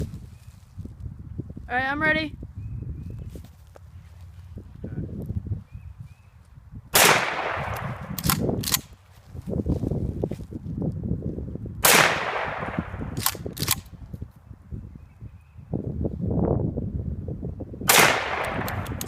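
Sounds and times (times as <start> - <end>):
loud gunshots ringing out: 6.9 - 8.4, 11.8 - 13.2, 17.9 - 19.0.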